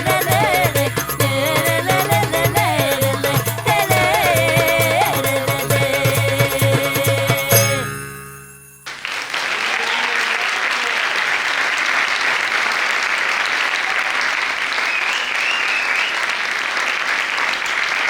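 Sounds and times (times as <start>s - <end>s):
music notes: 7.5s - 8.9s
audience applauding: 8.9s - 18.0s.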